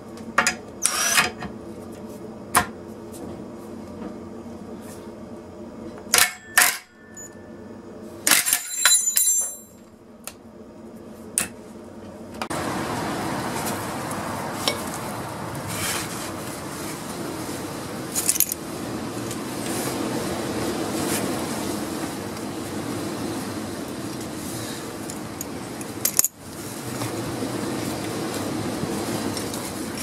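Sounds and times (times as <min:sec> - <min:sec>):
steady whirring noise: 0:00.0 - 0:30.0
metallic clinks and clatters: 0:08.3 - 0:09.8, 0:18.2 - 0:18.6, 0:25.4 - 0:26.4.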